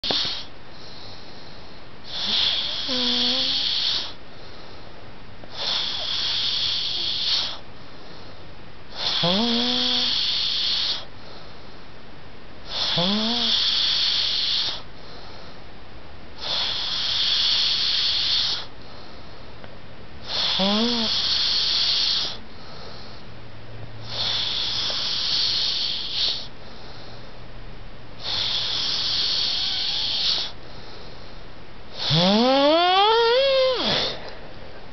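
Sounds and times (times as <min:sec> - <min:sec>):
person snoring loudly: 0:02.1 - 0:04.2, 0:05.6 - 0:07.6, 0:09.0 - 0:11.0, 0:12.7 - 0:14.8, 0:16.4 - 0:18.7, 0:20.3 - 0:22.4, 0:24.1 - 0:26.5, 0:28.2 - 0:30.6, 0:32.0 - 0:34.2.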